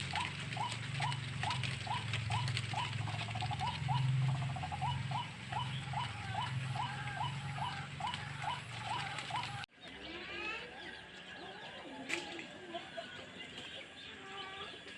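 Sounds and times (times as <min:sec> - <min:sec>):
waterhen calling: 0:00.0 - 0:10.8.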